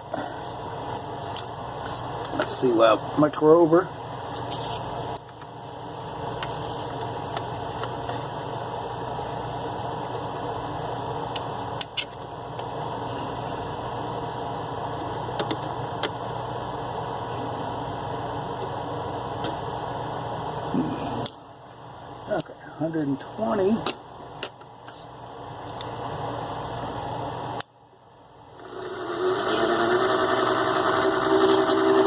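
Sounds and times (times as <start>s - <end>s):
mini lathe motor humming: 28.6s - 32.0s.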